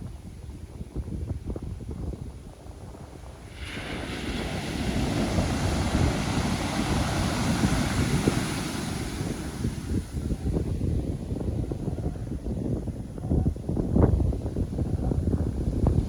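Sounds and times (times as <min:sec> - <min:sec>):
wind buffeting microphone: 0:00.0 - 0:16.0
ocean wave breaking: 0:03.4 - 0:10.7.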